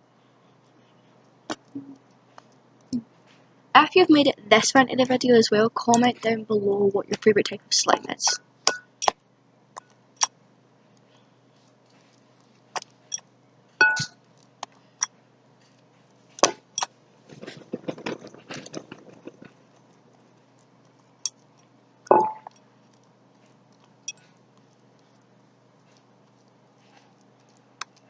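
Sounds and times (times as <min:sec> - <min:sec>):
glass bottles clinking: 0:13.8 - 0:14.1, 0:22.1 - 0:22.5.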